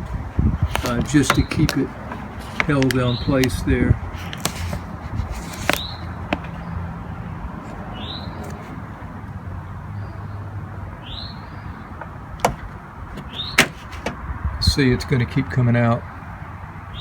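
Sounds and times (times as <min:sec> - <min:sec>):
bird chirping: 0:05.4 - 0:13.7.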